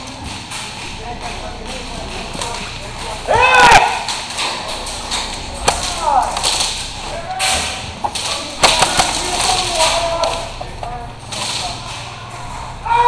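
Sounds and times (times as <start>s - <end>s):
pellets striking hard surfaces: 0.0s - 12.2s
distant voices shouting: 0.9s - 13.0s
airsoft guns firing: 4.8s - 10.6s.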